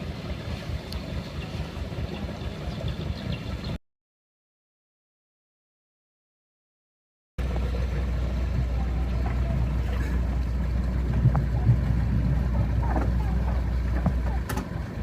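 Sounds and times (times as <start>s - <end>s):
diesel engine rumbling: 0.0s - 3.8s, 7.4s - 15.0s.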